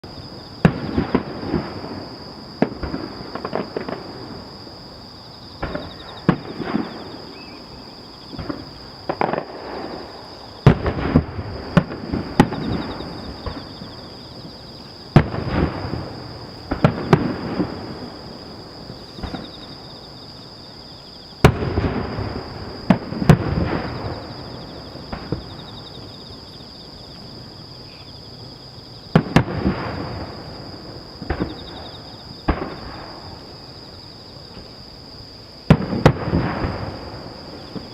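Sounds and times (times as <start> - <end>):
fireworks bursting with echo: 0.0 - 4.5, 5.6 - 7.6, 8.3 - 14.2, 15.1 - 19.9, 21.4 - 26.2, 29.1 - 33.6, 35.7 - 37.9.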